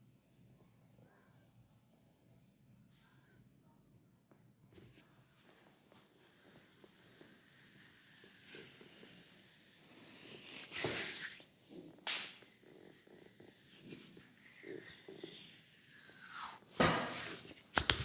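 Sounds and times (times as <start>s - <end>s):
hands rubbing oiled skin: 10.2s - 18.0s.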